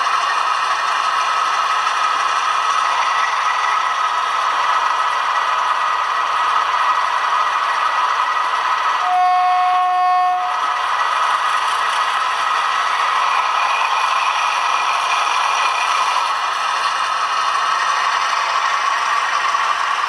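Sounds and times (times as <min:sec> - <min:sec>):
model diesel engine sound: 0:00.0 - 0:20.0
locomotive horn blast: 0:09.0 - 0:10.8.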